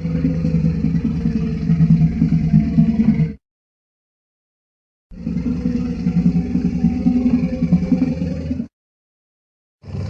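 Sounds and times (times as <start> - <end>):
deep rough monster roar: 0.0 - 3.4, 5.1 - 8.7.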